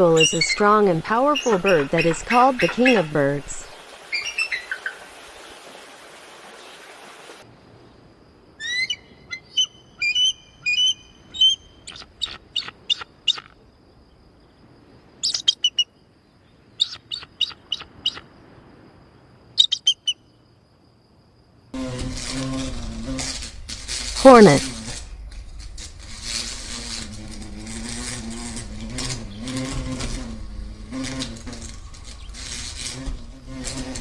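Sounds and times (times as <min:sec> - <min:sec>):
eagle calling: 0:00.0 - 0:05.0, 0:08.6 - 0:13.5, 0:15.2 - 0:15.9, 0:16.8 - 0:18.2, 0:19.6 - 0:20.2, 0:23.0 - 0:25.0
steady hiss: 0:20.9 - 0:34.0.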